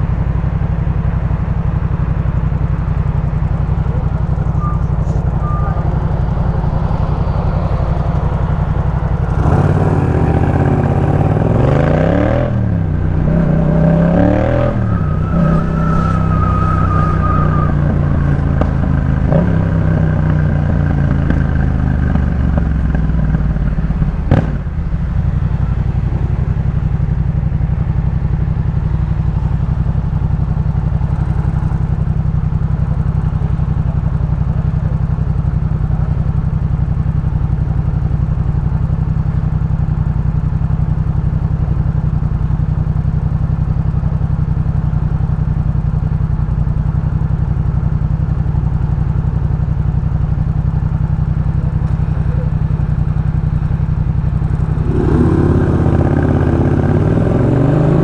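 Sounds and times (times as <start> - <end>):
motorcycle engine idling: 0.0 - 58.0
motorcycle engine slowing: 0.0 - 58.0.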